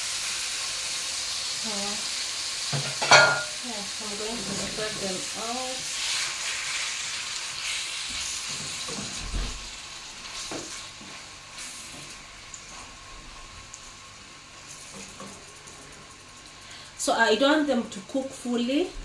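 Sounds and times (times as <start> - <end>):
chicken sizzling in hot oil: 0.0 - 18.9.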